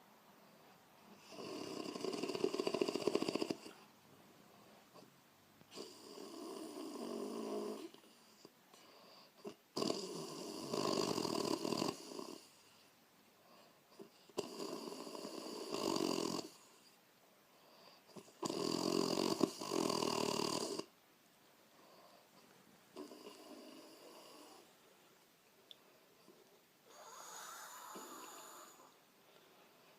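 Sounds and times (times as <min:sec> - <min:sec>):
woman snoring: 0:01.2 - 0:03.8, 0:05.7 - 0:08.0, 0:09.4 - 0:12.6, 0:14.3 - 0:16.7, 0:18.1 - 0:20.9, 0:23.0 - 0:24.7, 0:26.9 - 0:29.0.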